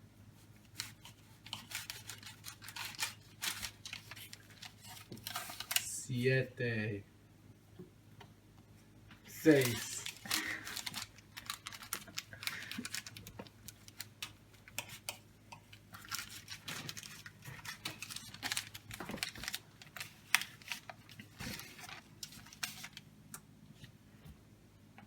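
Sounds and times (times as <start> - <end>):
food wrapping rustling and crinkling: 0.4 - 6.0, 9.2 - 23.1.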